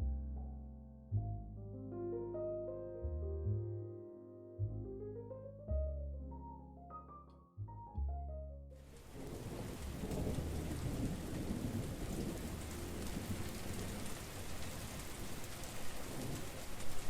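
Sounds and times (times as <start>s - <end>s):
steady rain: 8.8s - 17.0s
low rumble of thunder: 8.9s - 17.0s.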